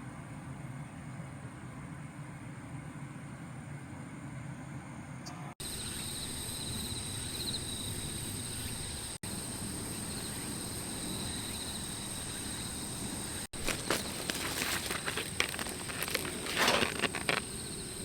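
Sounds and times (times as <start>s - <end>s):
insects chirping: 5.6s - 18.0s
low outdoor rumble: 9.3s - 18.0s.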